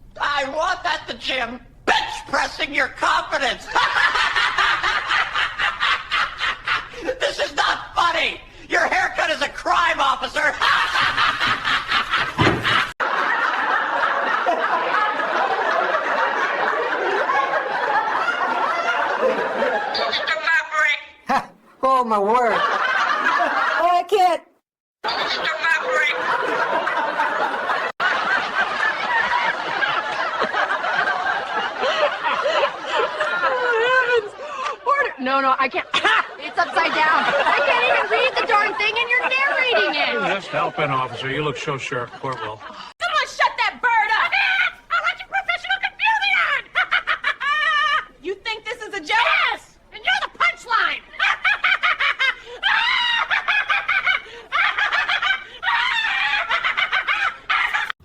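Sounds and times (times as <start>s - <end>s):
people laughing and snickering: 3.0s - 20.4s, 25.0s - 35.2s, 35.8s - 43.3s, 44.0s - 58.0s
high-pitched cackling laughter: 17.1s - 20.4s, 25.0s - 27.9s, 44.0s - 48.2s, 49.0s - 58.0s.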